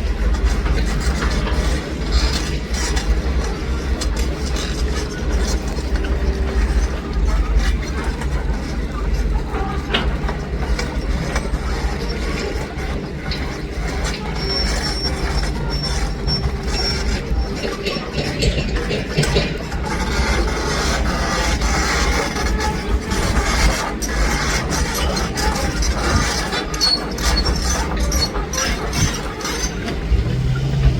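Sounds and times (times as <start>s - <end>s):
excavator diesel engine rumble: 0.0s - 30.9s
metallic clanks: 12.2s - 30.9s
thin high squeal: 14.1s - 18.4s.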